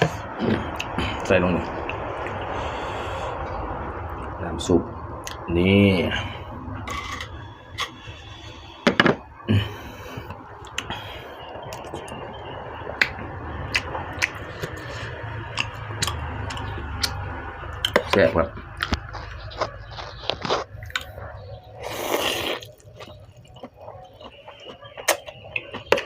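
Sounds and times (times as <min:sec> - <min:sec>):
low background hum: 0:00.0 - 0:26.0
person chewing: 0:06.8 - 0:08.8, 0:09.5 - 0:26.0.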